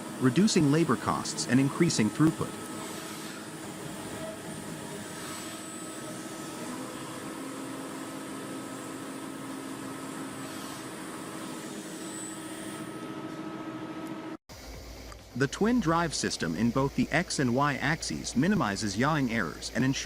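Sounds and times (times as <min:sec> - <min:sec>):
machine tool whirring: 0:00.0 - 0:13.5.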